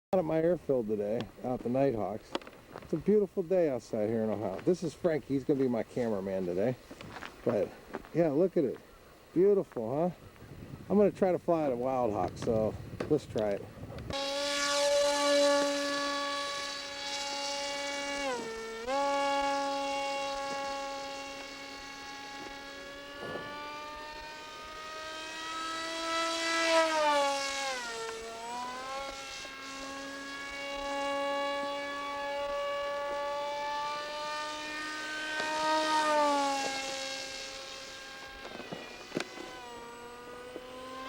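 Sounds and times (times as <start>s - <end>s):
model plane motor whining: 13.4s - 41.0s.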